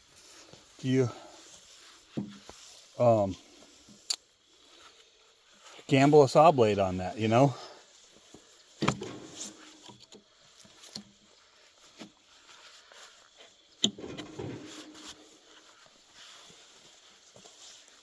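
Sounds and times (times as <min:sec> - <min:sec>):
sharp knocks and clicks: 0:08.8 - 0:10.2, 0:13.8 - 0:15.3.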